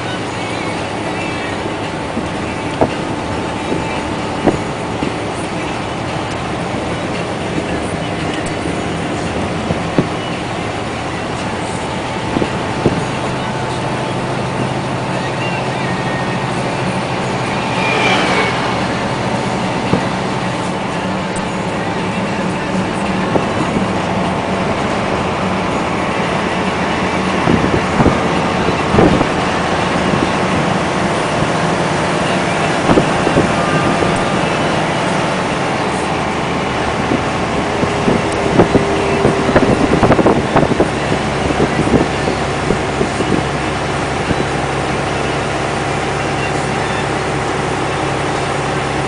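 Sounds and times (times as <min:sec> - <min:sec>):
dump truck diesel engine: 0:00.0 - 0:49.0.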